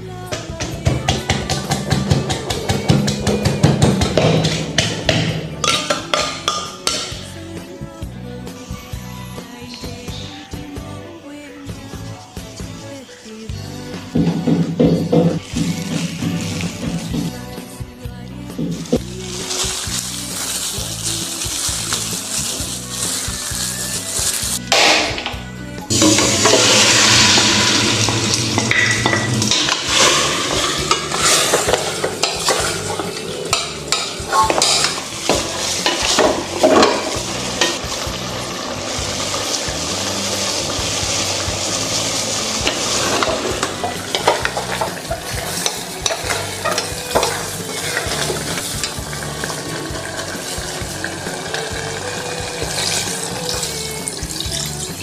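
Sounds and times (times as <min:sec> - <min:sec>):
background music: 0:00.0 - 0:55.0
food sizzling in a pan: 0:18.7 - 0:24.6, 0:25.9 - 0:55.0.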